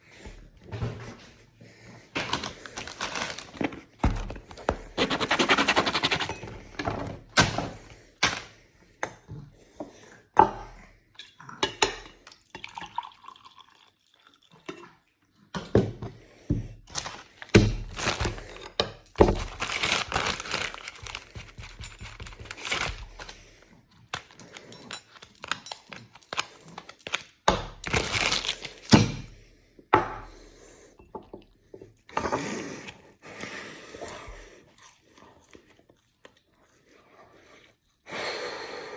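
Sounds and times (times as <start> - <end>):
rattling and crinkling: 2.2 - 7.4, 16.9 - 23.4, 24.0 - 29.3.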